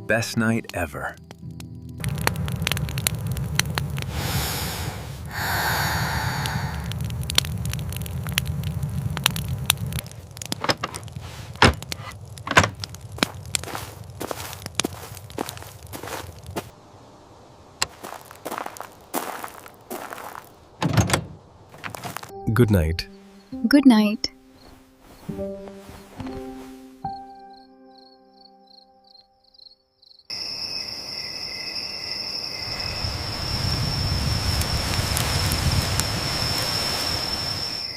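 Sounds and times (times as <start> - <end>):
soft music: 0.0 - 2.8, 22.3 - 29.5
campfire crackling and popping: 0.1 - 16.7, 17.8 - 20.6, 32.8 - 37.9
crickets chirping: 1.3 - 10.2, 11.0 - 20.8, 23.0 - 23.6, 24.2 - 37.9
low rumble: 2.0 - 10.5
high insect trill: 3.0 - 6.9, 13.2 - 16.7, 24.2 - 37.9.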